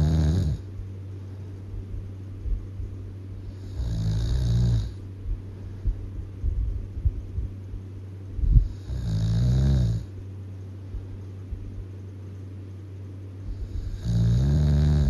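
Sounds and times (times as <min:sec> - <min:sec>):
loud rattling snores: 0:00.0 - 0:00.7, 0:03.5 - 0:05.0, 0:08.6 - 0:10.1, 0:13.6 - 0:15.0
steady low hum: 0:00.0 - 0:15.0.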